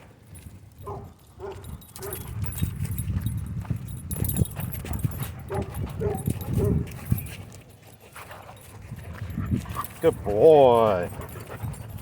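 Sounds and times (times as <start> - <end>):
dog barks: 0.8 - 2.3, 5.5 - 6.9.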